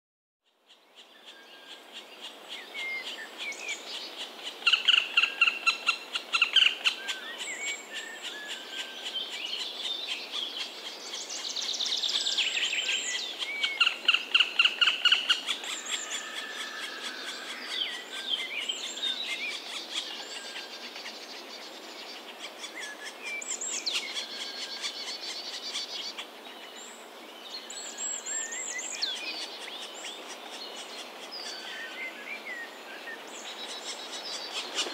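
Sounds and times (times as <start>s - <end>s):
birds chirping and singing: 2.3s - 34.9s.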